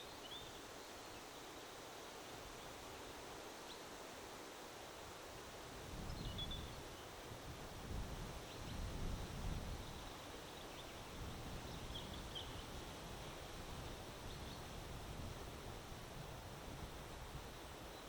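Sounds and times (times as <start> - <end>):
wind buffeting microphone: 5.8 - 10.0
faint bird chirps: 6.1 - 7.2, 8.4 - 14.8.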